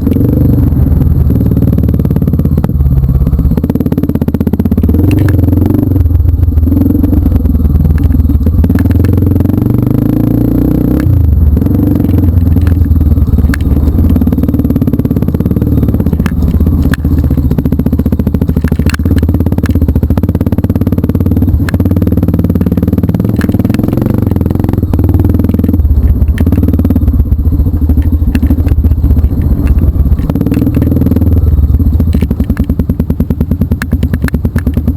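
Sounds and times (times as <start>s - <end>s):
motorcycle engine running: 0.0s - 34.9s
clicks and clatter: 4.7s - 5.6s, 7.8s - 9.4s, 11.0s - 34.9s.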